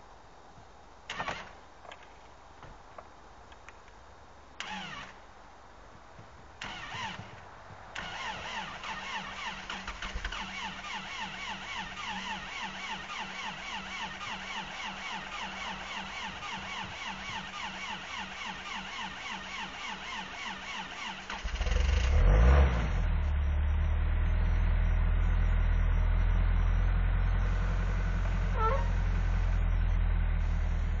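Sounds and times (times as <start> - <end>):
engine starter cranking: 1.1 - 1.5, 4.6 - 5.2, 6.6 - 7.3, 8.0 - 22.7
engine idling: 23.2 - 31.0.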